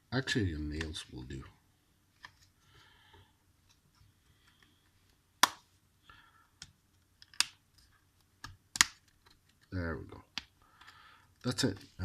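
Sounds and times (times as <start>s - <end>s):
plastic clips snapping: 6.6s - 7.6s, 8.3s - 9.7s.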